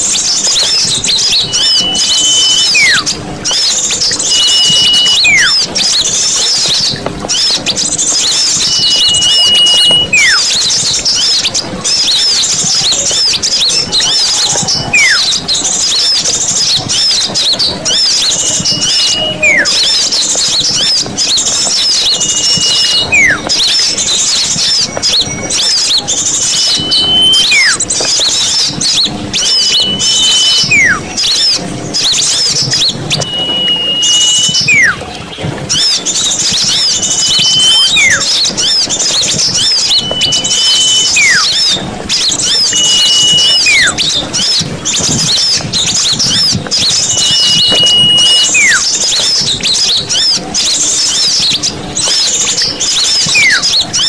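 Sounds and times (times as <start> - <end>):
high sliding bird whistle: 0.0 - 35.1, 35.7 - 54.0
small birds chattering and chirping: 0.0 - 54.0.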